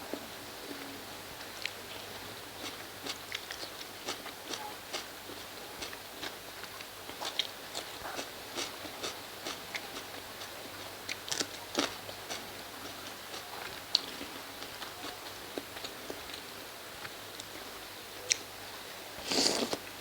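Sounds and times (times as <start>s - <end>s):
wet chewing: 2.6s - 16.5s, 19.2s - 19.9s.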